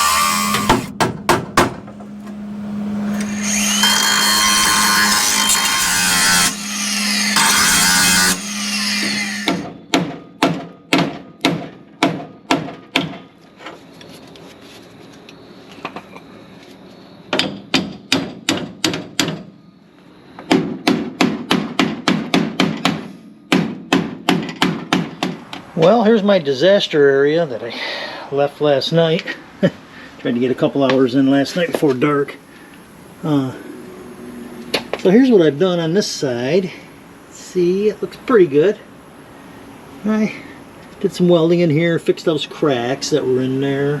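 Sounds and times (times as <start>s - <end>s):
power tool running: 0.0s - 9.6s
hammer striking metal: 0.0s - 13.2s, 20.5s - 25.6s.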